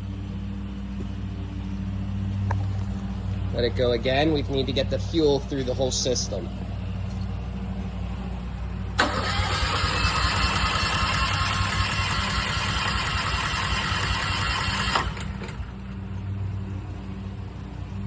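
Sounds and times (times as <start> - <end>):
generator starter cranking engine: 9.0 - 16.0.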